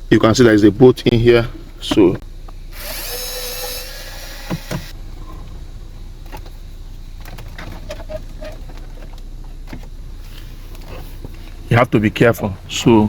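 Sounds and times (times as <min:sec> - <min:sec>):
power drill spinning: 0:02.7 - 0:05.0
sharp knocks: 0:04.4 - 0:04.9.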